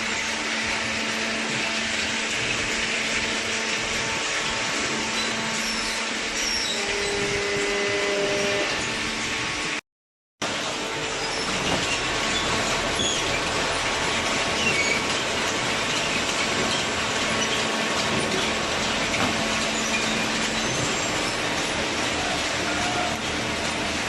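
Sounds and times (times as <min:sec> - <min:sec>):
industrial machinery humming: 0:00.0 - 0:09.8, 0:10.4 - 0:24.0
short high squeaks: 0:05.1 - 0:09.0.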